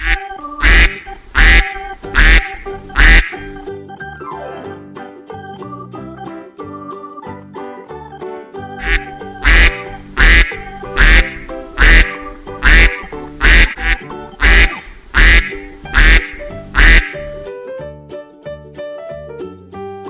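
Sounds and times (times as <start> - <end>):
duck quacking: 0.0 - 3.6, 8.8 - 17.4
background music: 0.0 - 20.0.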